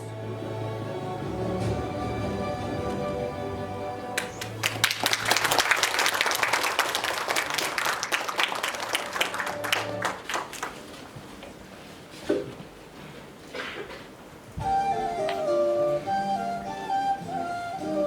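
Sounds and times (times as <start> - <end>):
background music: 0.0 - 5.0, 9.0 - 10.2, 14.6 - 18.0
audience applauding: 4.2 - 11.2.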